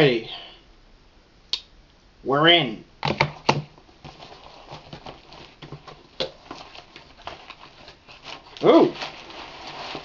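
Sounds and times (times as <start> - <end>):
light tapping and rustling: 3.0 - 8.0.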